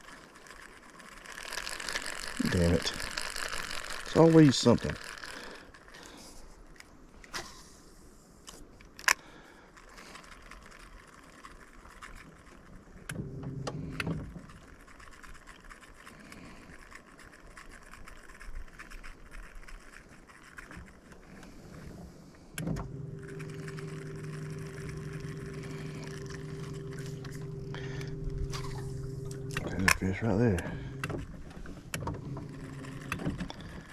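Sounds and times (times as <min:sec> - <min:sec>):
boat motor humming: 0:00.0 - 0:06.0, 0:12.6 - 0:15.0, 0:22.4 - 0:33.9
sharp clicks: 0:22.6 - 0:33.9.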